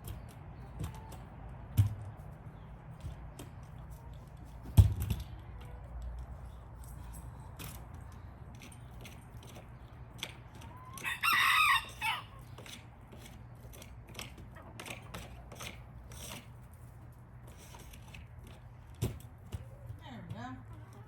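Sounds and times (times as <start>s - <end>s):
chicken calling: 10.5s - 12.5s.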